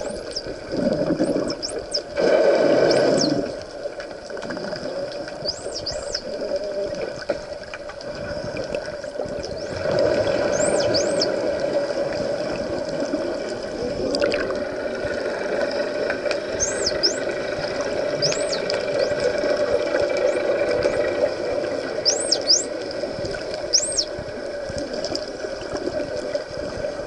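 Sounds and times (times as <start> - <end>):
dolphins whistling underwater: 0.0 - 3.6, 5.3 - 6.9, 8.2 - 12.0, 15.5 - 24.3
underwater water rush: 0.0 - 27.0.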